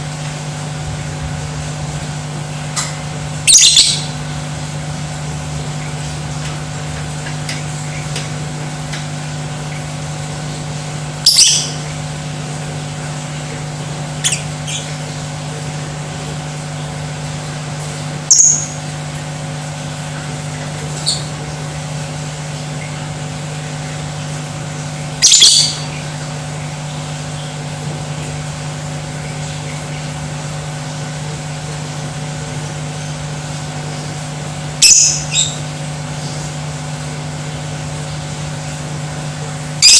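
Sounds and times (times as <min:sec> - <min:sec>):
steady low hum: 0:00.0 - 0:39.9
lovebird sharp high calls: 0:03.5 - 0:04.1, 0:11.2 - 0:11.8, 0:14.2 - 0:15.0, 0:18.3 - 0:18.8, 0:25.2 - 0:25.9, 0:34.8 - 0:35.6.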